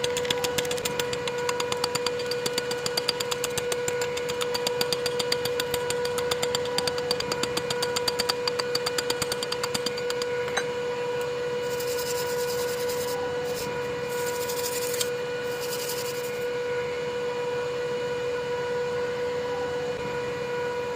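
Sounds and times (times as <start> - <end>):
high electrical hum: 0.0 - 16.6.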